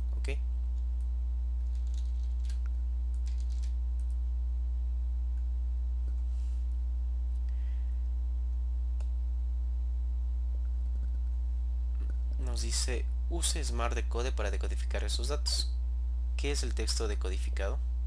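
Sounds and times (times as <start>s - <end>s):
electrical mains hum: 0.0s - 18.0s
computer keyboard clicks: 1.7s - 4.2s.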